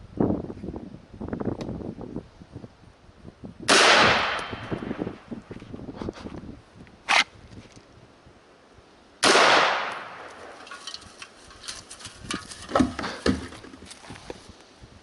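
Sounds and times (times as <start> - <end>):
loud gunshot: 3.7 - 5.0, 9.2 - 10.3.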